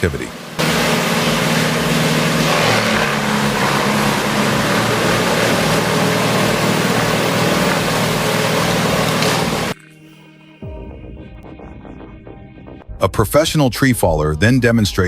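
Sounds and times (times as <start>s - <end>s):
wood chipper engine drone: 0.0s - 9.8s
wood grinding in chipper: 0.1s - 9.8s.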